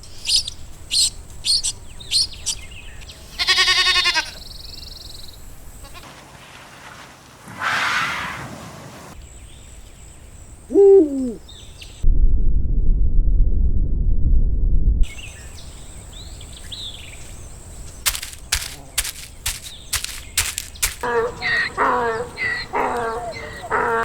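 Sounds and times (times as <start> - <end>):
sharp rapid clicks: 18.1 - 21.1.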